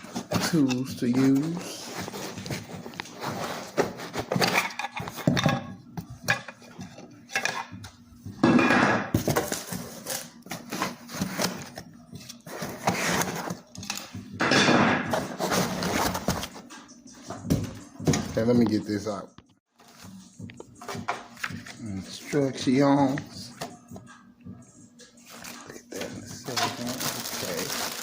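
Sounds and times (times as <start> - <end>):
packaging tearing or sliding: 26.8 - 28.0.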